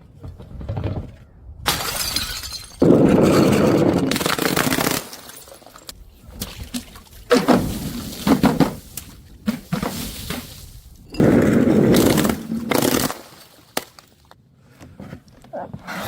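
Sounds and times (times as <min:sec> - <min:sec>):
glass bottle shattering: 0:01.7 - 0:06.0.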